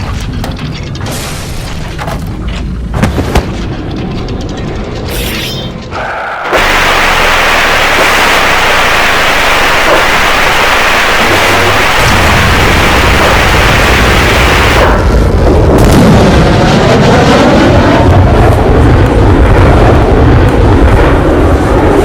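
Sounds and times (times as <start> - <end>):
hissing explosion blast: 6.5 - 21.5
deep churning rumble: 10.2 - 22.0.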